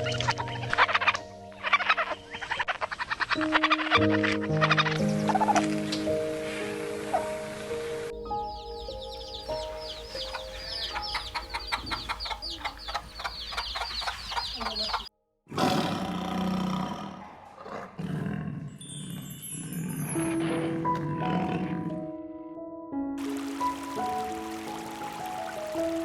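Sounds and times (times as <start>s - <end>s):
high chirping animal calls: 0.0s - 5.6s, 8.3s - 15.1s
soft piano music: 0.0s - 15.1s, 20.2s - 26.0s
low rough animal roar: 15.5s - 18.7s.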